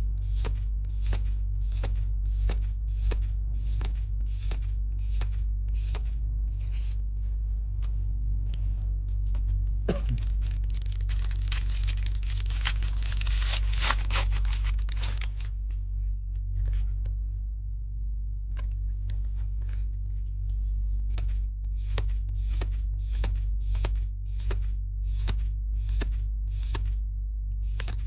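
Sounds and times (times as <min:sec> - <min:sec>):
steady low hum: 0:00.0 - 0:28.0
foil wrapper tearing and crinkling: 0:09.9 - 0:15.5.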